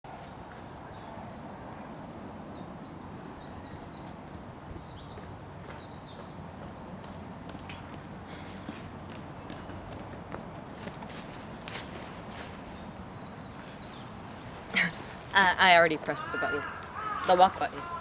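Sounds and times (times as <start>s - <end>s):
birds chirping: 2.5s - 8.8s, 11.1s - 18.0s.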